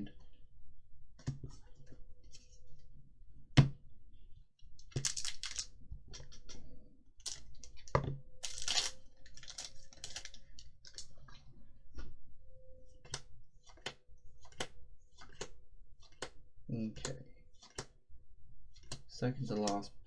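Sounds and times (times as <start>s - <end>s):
cards rustling: 4.8s - 5.7s, 7.2s - 7.7s, 8.4s - 11.1s
wrapper crinkling: 4.9s - 5.7s, 7.2s - 7.6s, 8.4s - 11.1s.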